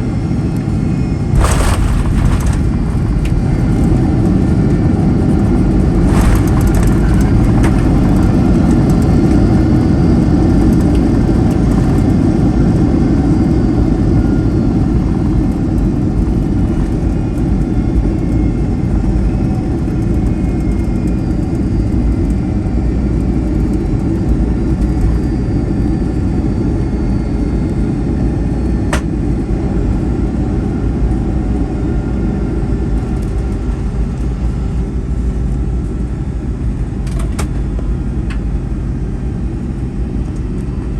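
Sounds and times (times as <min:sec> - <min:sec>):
jet cabin rumble: 0:00.0 - 0:40.9
faint engine tones: 0:01.3 - 0:25.9.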